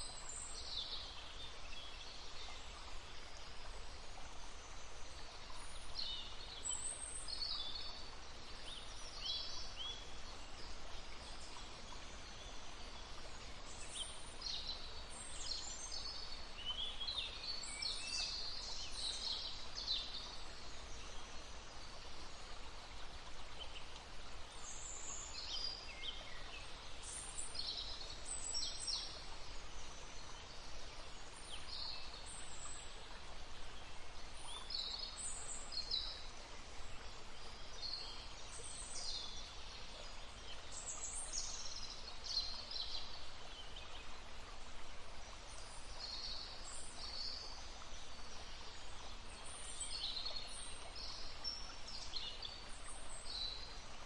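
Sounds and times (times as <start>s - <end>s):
flowing stream: 0.0s - 54.0s.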